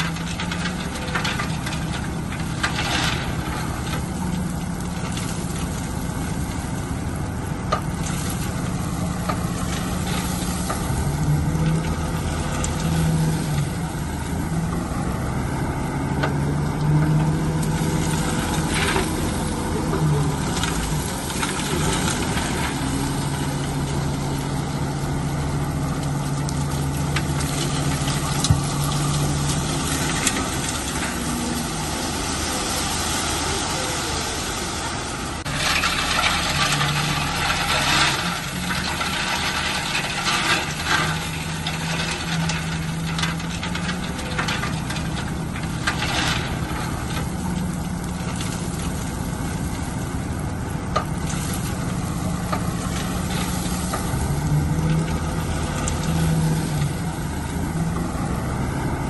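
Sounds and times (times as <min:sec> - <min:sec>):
bulldozer diesel engine running: 0:00.0 - 0:59.0
rough grinding noise: 0:00.0 - 0:59.0.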